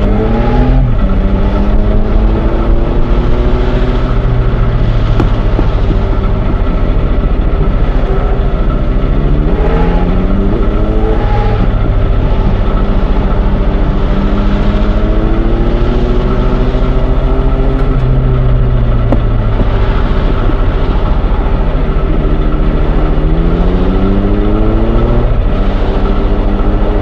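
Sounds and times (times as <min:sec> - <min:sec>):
train engine tone: 0:00.0 - 0:26.1
train rumbling: 0:00.0 - 0:27.0.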